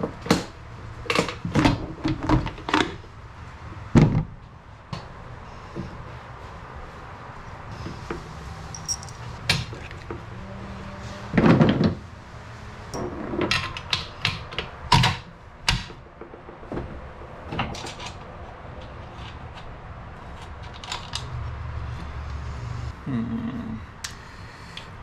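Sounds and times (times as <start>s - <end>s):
tools and parts clattering: 8.7s - 9.4s.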